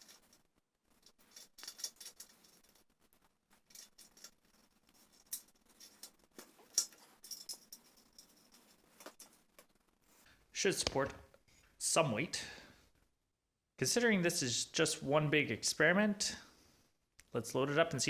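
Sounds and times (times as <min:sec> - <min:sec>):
wire cable clicking and rattling: 0:00.0 - 0:09.8.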